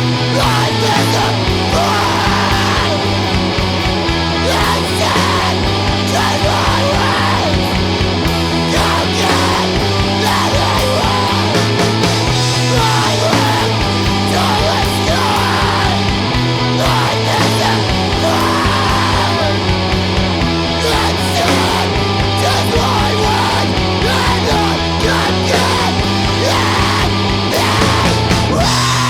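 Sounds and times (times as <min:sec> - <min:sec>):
heavy rock music: 0:00.0 - 0:29.0
shouted vocals: 0:00.0 - 0:29.0.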